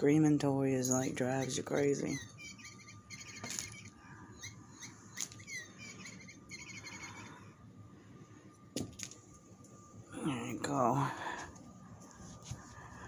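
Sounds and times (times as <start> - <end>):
electronic cat toy chirping: 1.4 - 7.3.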